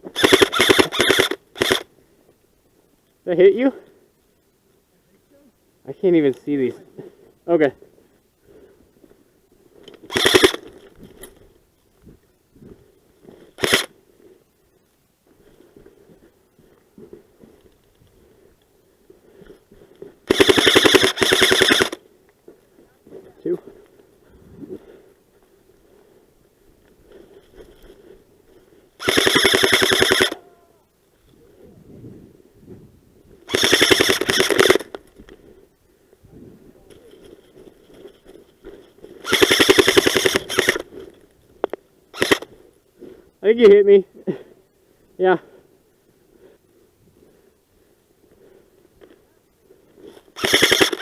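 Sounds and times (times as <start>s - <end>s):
airsoft gun shots: 0.1s - 1.9s, 20.3s - 22.0s, 29.0s - 30.4s, 33.5s - 34.9s, 50.4s - 51.0s.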